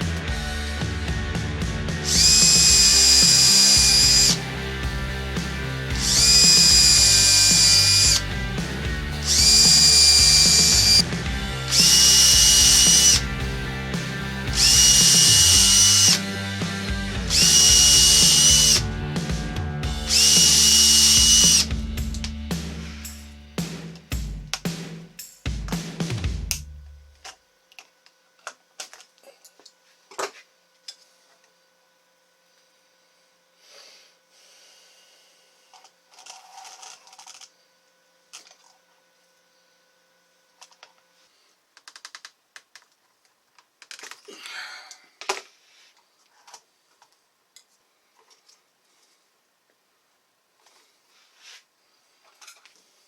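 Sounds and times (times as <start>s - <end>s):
background music: 0.0s - 26.6s
power tool motor whining: 2.0s - 4.6s, 6.0s - 13.4s, 14.5s - 16.3s, 16.9s - 19.0s, 19.9s - 22.0s.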